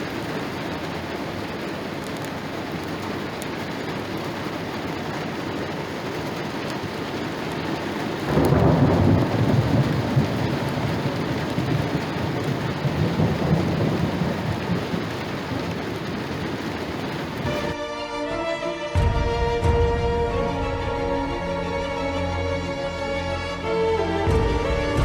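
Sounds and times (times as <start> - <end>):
thunder rumbling: 0.0 - 17.8
steady rain falling: 0.0 - 25.0.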